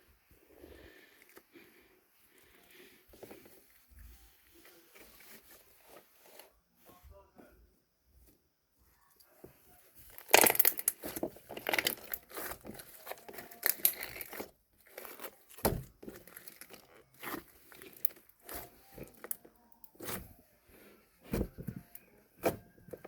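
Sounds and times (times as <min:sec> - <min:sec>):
crinkling and tearing: 0:10.0 - 0:20.4.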